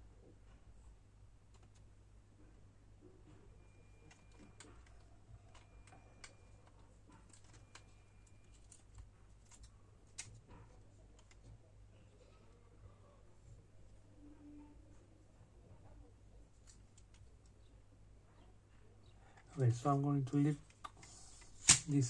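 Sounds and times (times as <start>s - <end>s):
plastic parts clicking and tapping: 4.0s - 11.6s.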